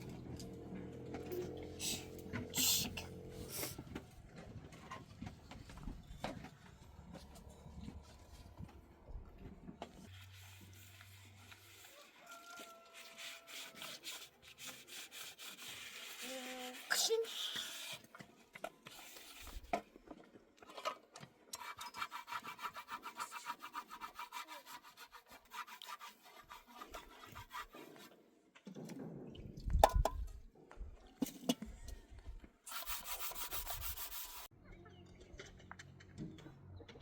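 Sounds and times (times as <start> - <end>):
hand tool scraping: 10.1 - 18.1, 21.5 - 28.2, 32.7 - 34.5.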